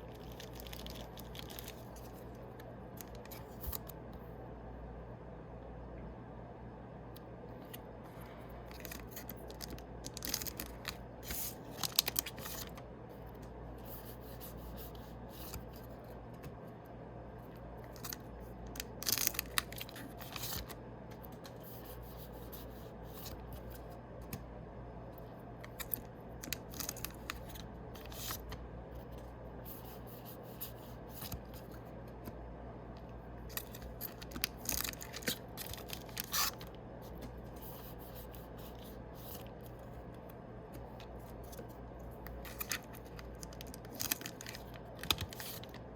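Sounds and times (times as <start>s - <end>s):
card packs tearing and crinkling: 8.7s - 12.8s, 17.9s - 20.8s, 25.7s - 28.4s, 33.5s - 36.7s, 42.3s - 45.9s
cards rustling: 8.7s - 12.8s, 17.8s - 23.9s, 25.7s - 29.2s, 33.4s - 40.0s, 40.8s - 45.9s.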